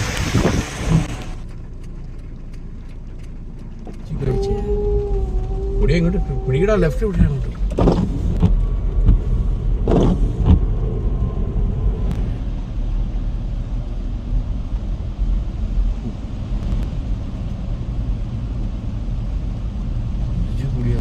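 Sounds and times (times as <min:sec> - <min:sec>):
car engine and tyre rumble: 0:00.0 - 0:21.0
car bumps: 0:07.1 - 0:10.7.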